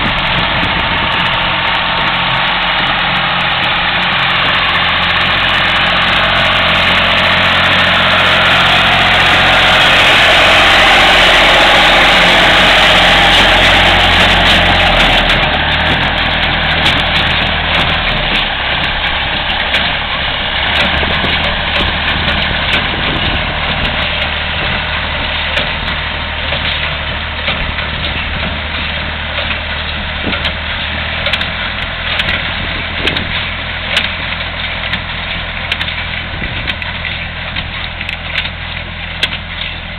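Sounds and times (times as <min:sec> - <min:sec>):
engine running: 0:00.0 - 0:39.9
baler clicks and knocks: 0:14.5 - 0:39.9.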